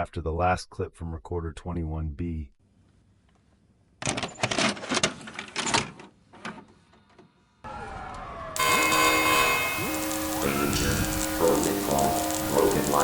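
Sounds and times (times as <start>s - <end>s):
loud multi-tone sound: 8.6s - 13.0s
steady hum: 8.6s - 13.0s.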